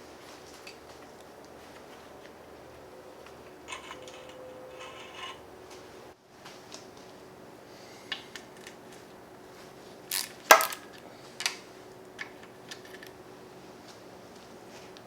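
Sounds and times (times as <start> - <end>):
metal engine parts clinking: 1.6 - 5.9
metal scrape: 3.0 - 6.0.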